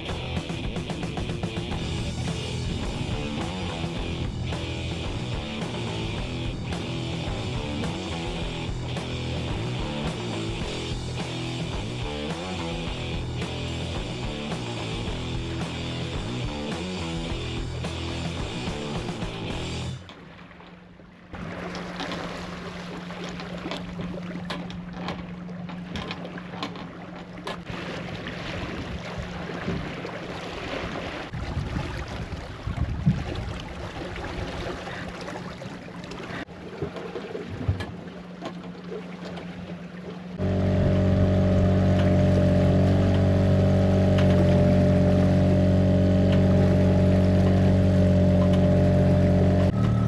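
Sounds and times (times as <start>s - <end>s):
loud drone with pitched tones: 0.0s - 20.0s, 40.4s - 50.0s
steady low hum: 0.0s - 20.1s, 40.2s - 50.0s
water splashing along hull: 0.0s - 50.0s
wind: 0.0s - 50.0s.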